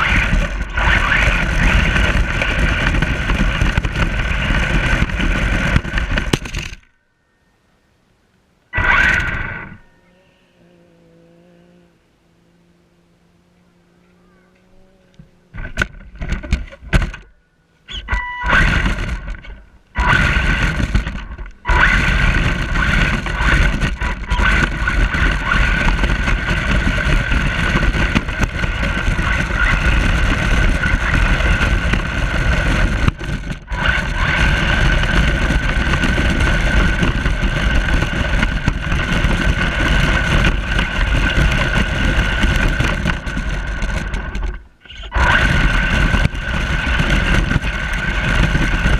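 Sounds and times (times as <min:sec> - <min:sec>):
toy truck motor whining: 0:20.0 - 0:44.2.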